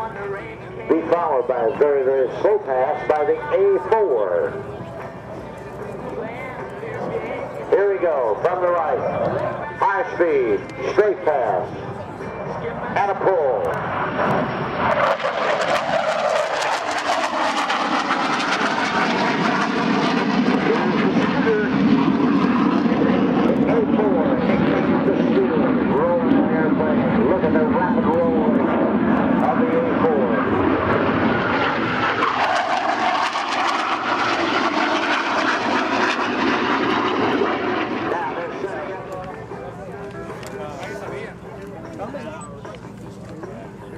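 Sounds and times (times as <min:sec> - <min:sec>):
jet roar with crackle: 0:13.6 - 0:26.4, 0:28.0 - 0:39.4.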